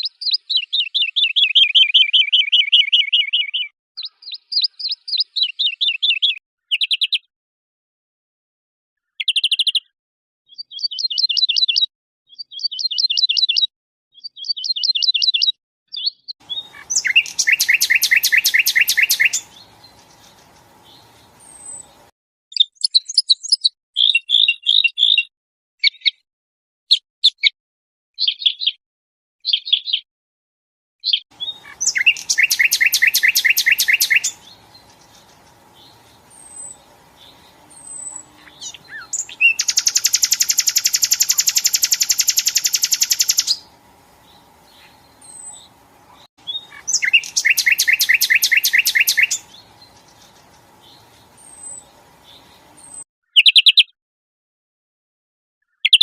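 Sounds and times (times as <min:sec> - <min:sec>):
songbirds chirping: 0:14.2 - 0:23.3, 0:31.4 - 0:53.9
fast rattling bird trills: 0:16.5 - 0:22.1, 0:31.4 - 0:53.8
faint steady hiss: 0:16.6 - 0:22.1, 0:31.4 - 0:47.8, 0:48.7 - 0:53.0.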